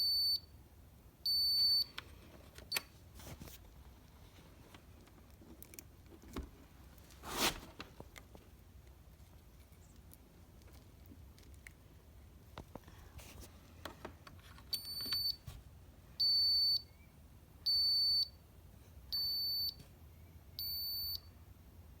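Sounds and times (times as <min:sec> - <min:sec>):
high-pitched tester beeps: 0:00.0 - 0:00.5, 0:01.3 - 0:01.9, 0:14.8 - 0:15.4, 0:16.2 - 0:16.9, 0:17.7 - 0:18.4, 0:19.1 - 0:19.8, 0:20.6 - 0:21.3.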